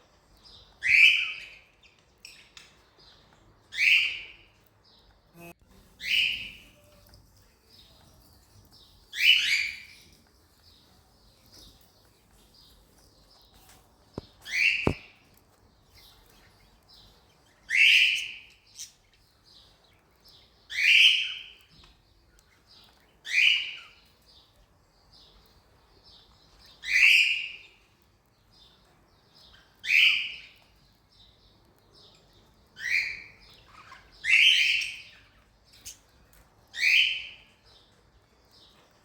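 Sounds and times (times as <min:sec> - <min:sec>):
soft bird chirps: 0:00.0 - 0:39.0
cockatiels calling shrilly: 0:09.2 - 0:10.0.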